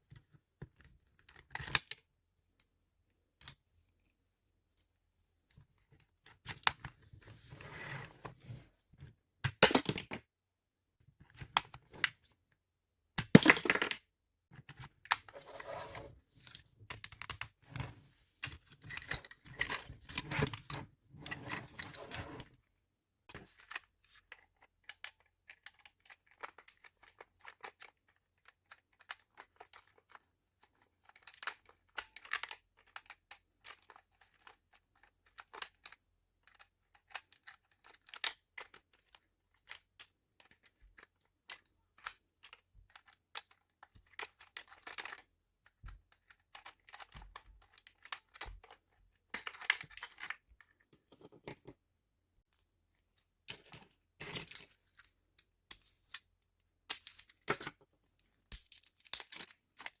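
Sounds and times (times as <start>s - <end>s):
packaging tearing and crinkling: 58.3s - 60.0s.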